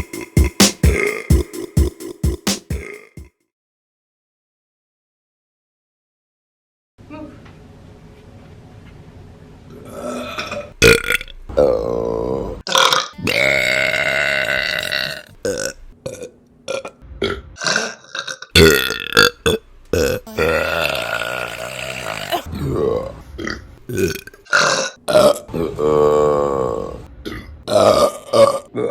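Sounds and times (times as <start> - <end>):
woman burping: 20.3 - 22.5.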